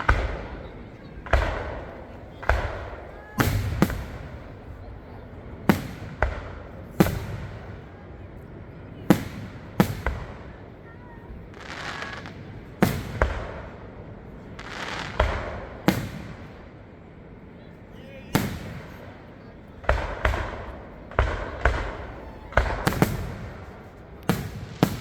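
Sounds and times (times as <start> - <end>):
firework shells bursting: 0.0 - 4.8
fireworks crackling: 0.0 - 25.0.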